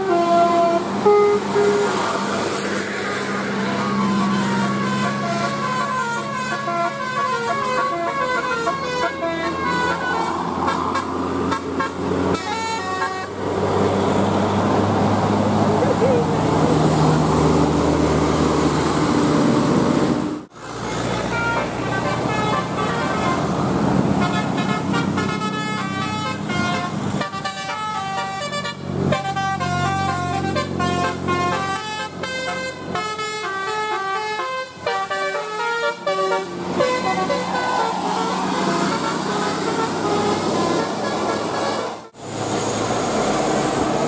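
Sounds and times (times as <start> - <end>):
bus musical air horn melody: 0.0 - 13.6, 20.8 - 42.3
bus engine running: 0.0 - 44.0.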